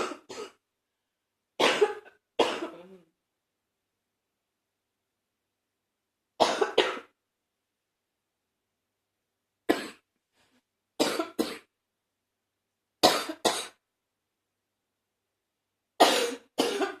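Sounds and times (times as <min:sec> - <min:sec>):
person coughing: 0:00.0 - 0:00.6, 0:01.6 - 0:03.1, 0:06.4 - 0:07.1, 0:11.0 - 0:11.7, 0:13.0 - 0:13.8, 0:16.0 - 0:17.0.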